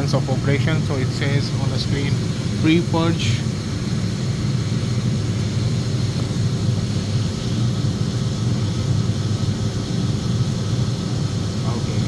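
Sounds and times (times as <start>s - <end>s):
boiler room machinery humming: 0.0s - 12.0s.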